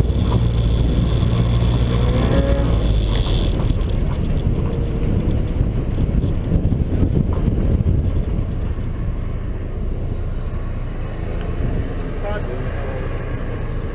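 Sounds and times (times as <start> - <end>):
wind on microphone: 0.0 - 9.7
car engine rough rumble: 0.0 - 13.9.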